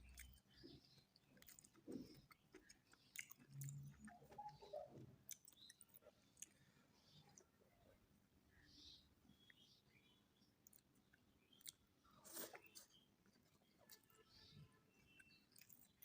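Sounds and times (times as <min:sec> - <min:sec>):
person chewing food: 0:00.0 - 0:04.6, 0:05.2 - 0:07.6, 0:10.6 - 0:14.1, 0:15.0 - 0:16.0.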